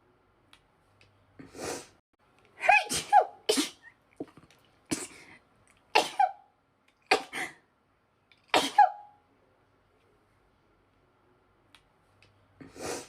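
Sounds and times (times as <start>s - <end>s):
woman sneezing: 2.6s - 3.9s, 8.5s - 9.0s.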